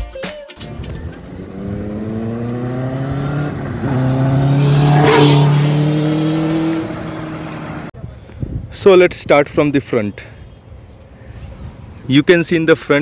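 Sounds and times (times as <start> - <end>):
motorcycle engine accelerating: 0.6 - 7.9.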